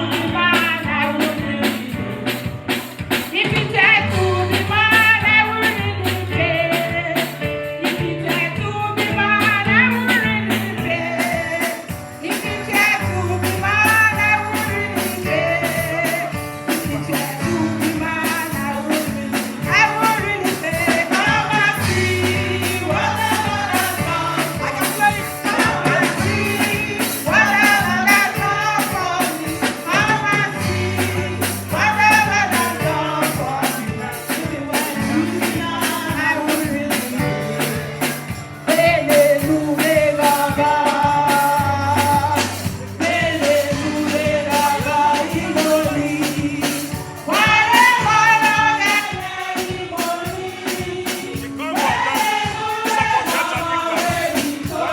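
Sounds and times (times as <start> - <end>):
steady percussion beat: 0.0 - 54.9
voices singing gospel: 0.0 - 54.9
bass line: 3.9 - 7.2, 41.2 - 46.6.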